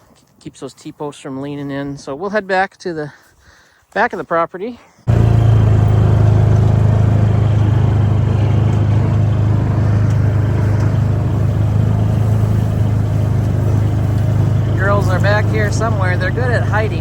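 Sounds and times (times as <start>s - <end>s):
vehicle engine humming while driving: 5.1s - 17.0s.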